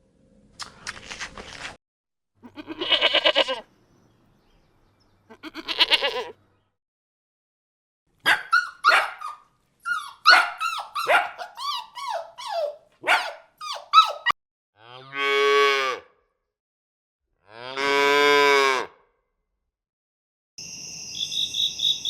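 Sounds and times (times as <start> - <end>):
wavering bleats: 2.4 - 3.6, 5.3 - 6.4
dog barking: 8.2 - 14.4.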